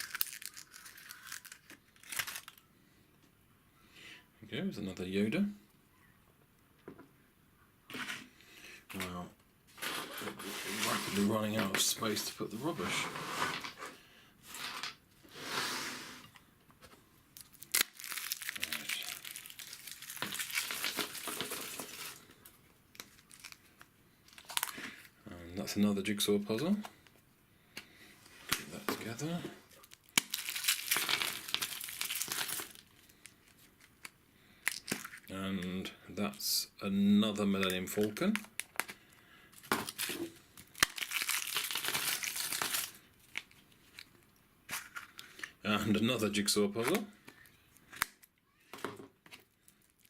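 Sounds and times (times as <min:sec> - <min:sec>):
wrapper crinkling: 0:00.0 - 0:02.6, 0:17.3 - 0:25.1, 0:28.5 - 0:35.3, 0:38.0 - 0:45.5, 0:49.3 - 0:50.0.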